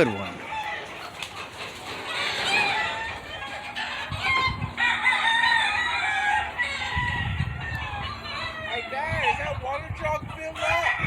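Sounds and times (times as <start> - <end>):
chickens clucking: 0.0 - 11.0
rooster crowing: 2.1 - 8.9, 10.6 - 11.0.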